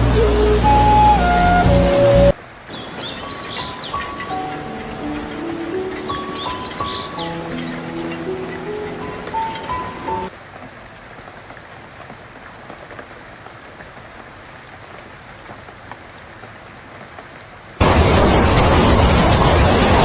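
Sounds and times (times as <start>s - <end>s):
held music notes: 0.0s - 2.4s, 3.0s - 10.3s
light rain pattering: 0.0s - 20.0s
loud rushing noise: 17.8s - 20.0s.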